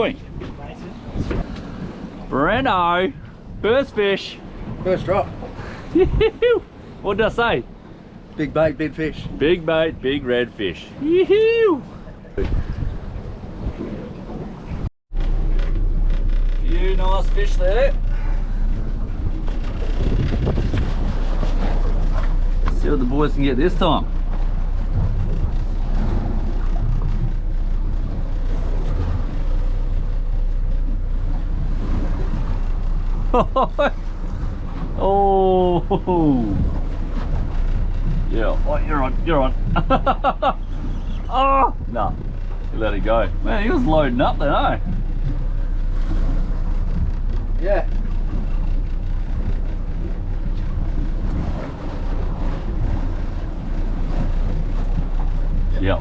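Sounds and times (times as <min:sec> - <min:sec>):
steady low rumble: 0:00.0 - 0:56.0
wind buffeting microphone: 0:00.0 - 0:56.0.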